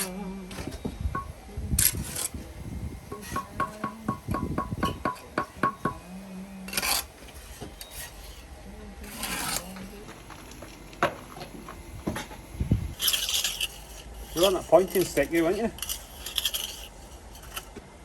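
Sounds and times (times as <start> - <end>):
trowel tapping and scraping: 3.1 - 6.0.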